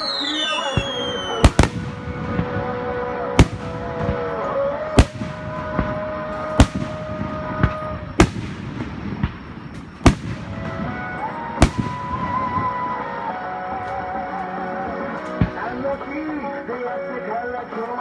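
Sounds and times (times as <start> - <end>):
background music with held notes: 0.0 - 8.5, 10.1 - 18.0
faint fireworks pops: 0.0 - 13.0, 15.2 - 16.0
fireworks bangs: 0.0 - 14.3.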